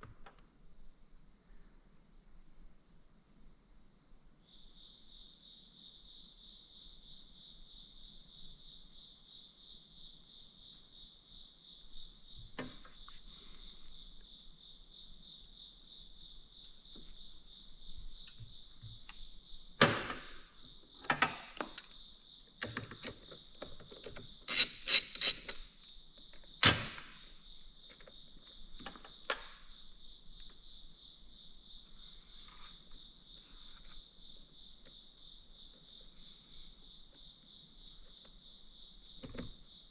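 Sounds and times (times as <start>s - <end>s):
crickets chirping: 0.0s - 39.9s
clicks and knocks of hand work: 18.1s - 22.0s, 27.9s - 29.7s.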